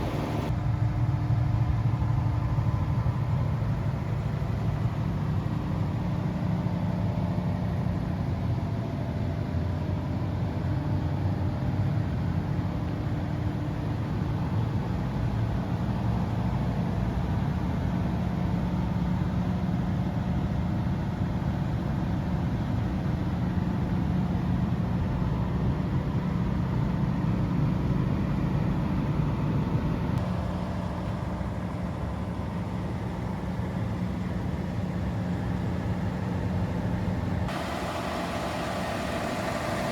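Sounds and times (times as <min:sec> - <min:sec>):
diesel generator humming: 0:00.0 - 0:00.6, 0:26.7 - 0:39.9.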